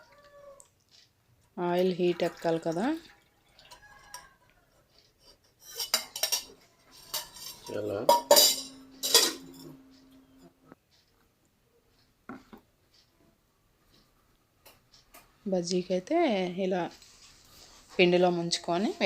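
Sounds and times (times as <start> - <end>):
metal pans clattering: 5.5 - 9.9.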